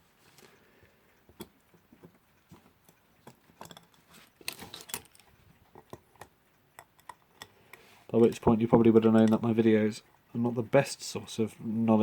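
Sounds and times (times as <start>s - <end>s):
small metal parts clicking: 2.8s - 9.5s.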